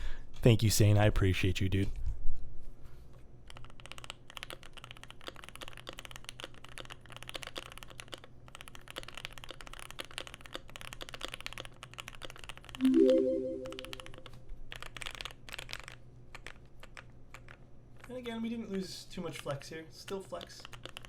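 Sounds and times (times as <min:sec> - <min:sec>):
mechanical keyboard typing: 0:03.5 - 0:14.2, 0:20.1 - 0:21.0
rising electronic tone: 0:12.8 - 0:14.4.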